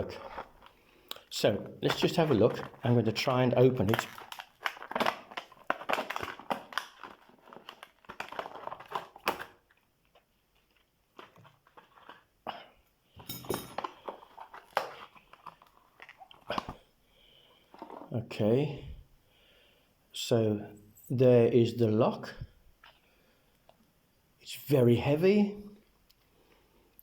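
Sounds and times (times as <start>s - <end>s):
packaging rustling: 0.0s - 12.4s, 13.6s - 18.2s.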